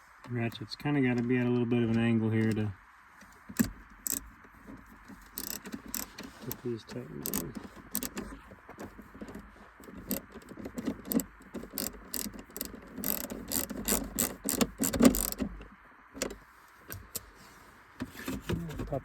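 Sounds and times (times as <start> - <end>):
ratchet pawl clicking: 3.6 - 4.3, 5.3 - 6.6, 7.2 - 8.3, 9.8 - 15.5.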